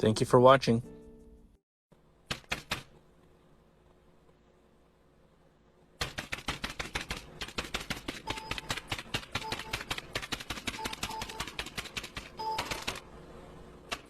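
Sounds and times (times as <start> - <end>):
short beeps: 8.3 - 8.7, 12.4 - 12.8.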